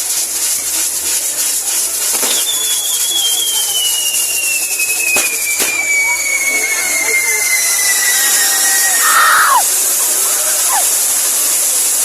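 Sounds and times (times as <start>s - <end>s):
fireworks fountains hissing: 0.0s - 12.0s
sharp firework cracks: 0.9s - 12.0s
falling whistling tone: 2.2s - 9.7s.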